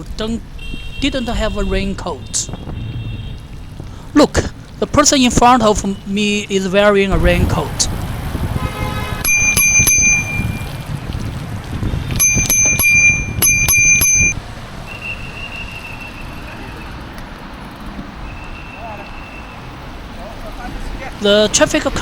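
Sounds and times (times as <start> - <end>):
bicycle rumbling on wet road: 1.9 - 5.6, 7.1 - 18.3
bicycle bell dings: 9.2 - 10.8, 12.1 - 14.4.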